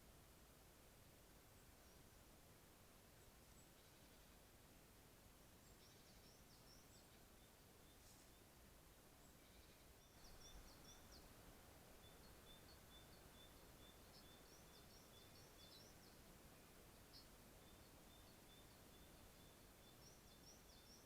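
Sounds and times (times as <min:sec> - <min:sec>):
background hiss: 0:00.0 - 0:21.0
faint birdsong chirps: 0:00.0 - 0:21.0.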